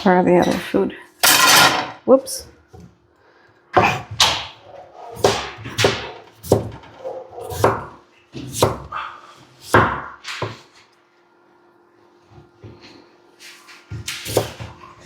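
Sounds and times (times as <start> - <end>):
knife chopping on cutting board: 3.8 - 4.6, 5.2 - 8.9, 9.6 - 10.6, 13.9 - 14.8.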